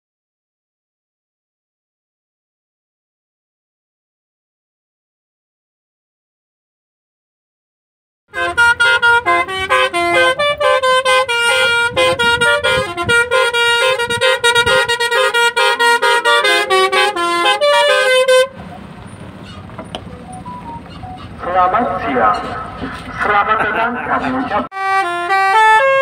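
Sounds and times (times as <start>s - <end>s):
musical air horn melody: 8.3s - 18.6s, 24.7s - 26.0s.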